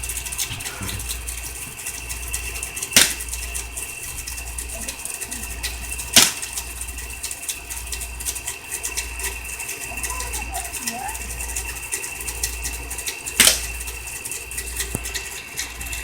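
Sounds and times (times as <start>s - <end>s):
airsoft gun shots: 3.0s - 3.2s.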